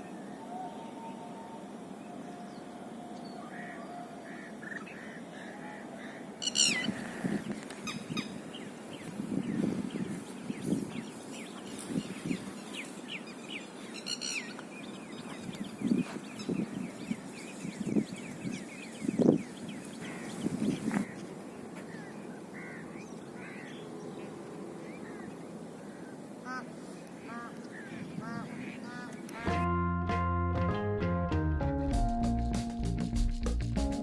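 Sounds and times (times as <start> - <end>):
loud harsh bird calls: 0.0 - 8.8, 13.9 - 14.6
birds chirping: 0.0 - 29.5.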